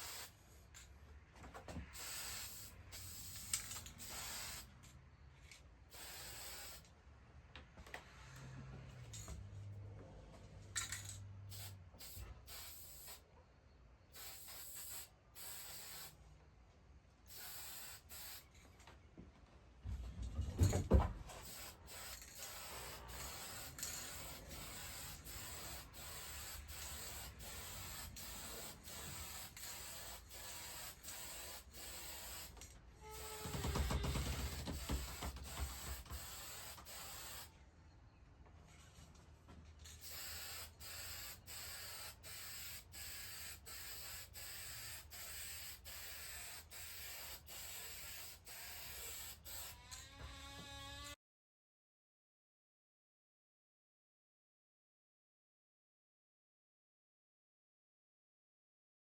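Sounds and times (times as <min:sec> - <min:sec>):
spray nozzle hissing: 0:00.0 - 0:00.4, 0:01.9 - 0:04.7, 0:05.9 - 0:06.8, 0:11.5 - 0:13.2, 0:14.2 - 0:16.2, 0:17.3 - 0:18.5, 0:21.4 - 0:37.5, 0:40.0 - 0:49.3.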